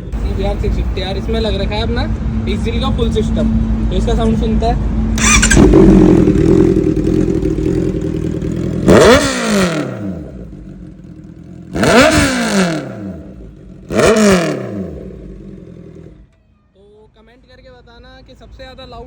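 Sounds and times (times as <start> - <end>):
motorcycle engine revving: 5.1 - 16.3.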